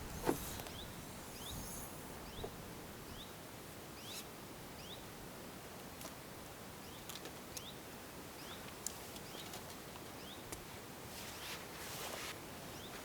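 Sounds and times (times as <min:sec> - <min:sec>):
small bird chirping: 0:00.0 - 0:03.4
quiet outdoor ambience: 0:00.0 - 0:13.0.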